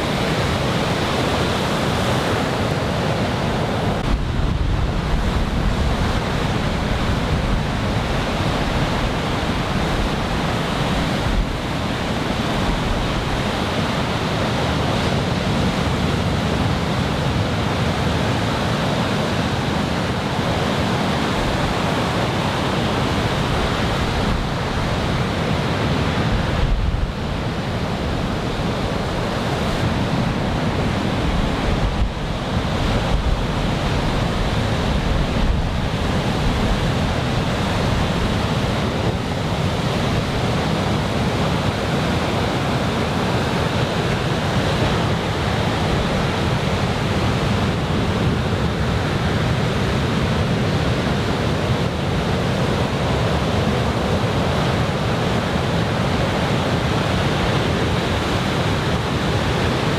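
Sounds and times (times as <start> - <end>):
wind buffeting microphone: 0.0 - 14.0, 21.1 - 49.8
waves breaking: 0.0 - 59.9.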